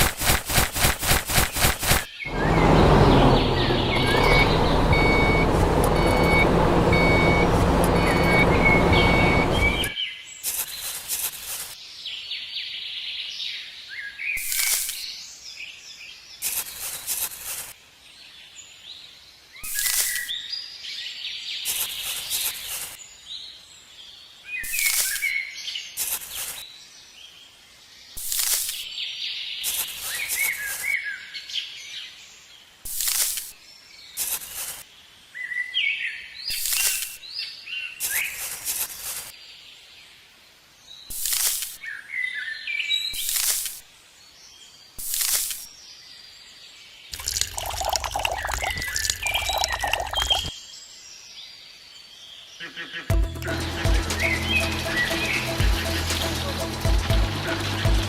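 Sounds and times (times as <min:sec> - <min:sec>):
birds chirping: 0:00.0 - 0:10.0, 0:47.0 - 0:50.5.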